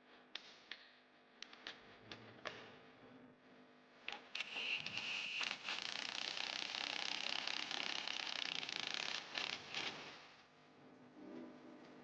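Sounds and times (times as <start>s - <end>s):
ratchet wrench clicking rapidly: 5.4s - 9.9s.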